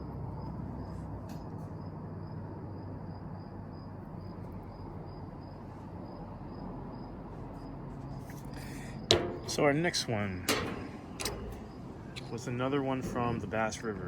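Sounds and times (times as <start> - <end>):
insect chirping: 1.7 - 9.7.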